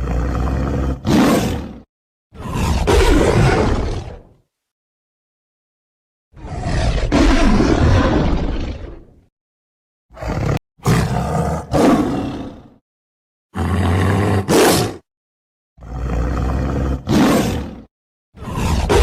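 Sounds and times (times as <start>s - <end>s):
tiger roaring: 0.0s - 4.4s, 6.4s - 9.2s, 10.1s - 12.8s, 13.6s - 15.0s, 15.8s - 19.0s.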